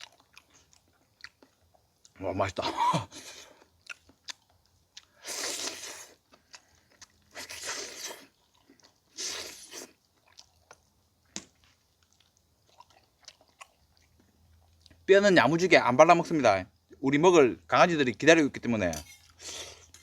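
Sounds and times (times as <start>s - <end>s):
person chewing and gnawing: 0.0s - 2.2s, 3.2s - 15.0s.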